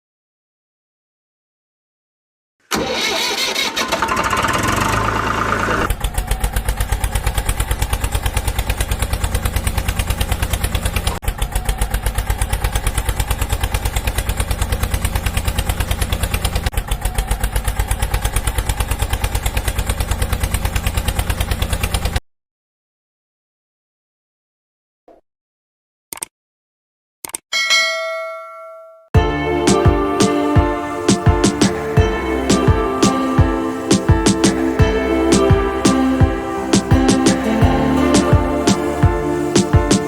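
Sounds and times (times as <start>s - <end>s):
engine starting and idling: 2.7s - 22.2s.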